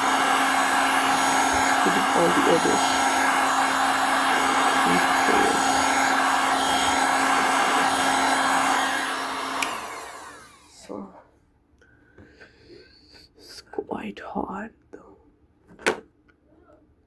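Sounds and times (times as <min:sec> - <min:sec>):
hot-air blower running: 0:00.0 - 0:11.1.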